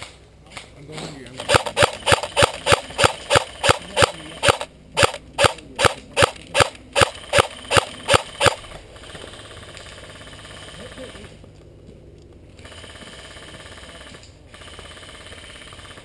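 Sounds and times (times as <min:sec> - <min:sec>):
airsoft gun shots: 0:01.4 - 0:09.2.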